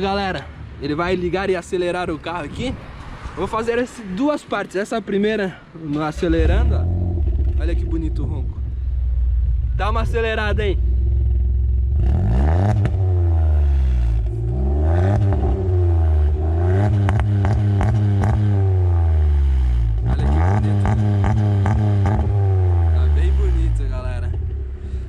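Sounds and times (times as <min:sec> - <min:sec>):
car engine revving: 0:06.2 - 0:25.0
exhaust crackling ticks: 0:23.9 - 0:25.0.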